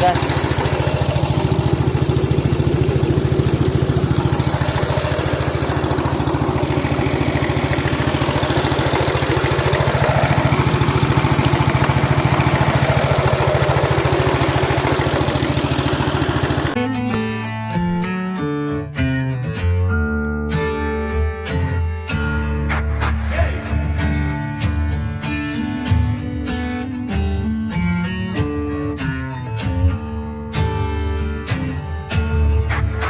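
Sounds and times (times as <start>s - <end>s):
boat engine running steadily: 0.0s - 16.8s
guitar music: 0.0s - 33.0s.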